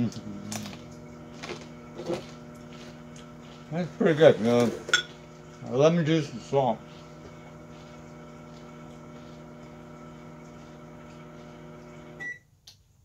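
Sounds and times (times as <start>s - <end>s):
microwave oven humming: 0.0s - 12.5s
microwave beep: 9.4s - 12.5s.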